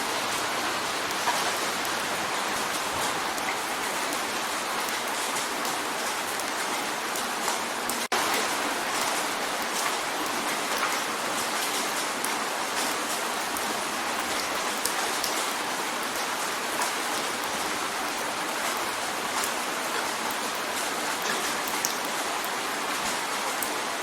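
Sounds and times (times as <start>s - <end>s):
rain drumming on a window: 0.0s - 24.0s.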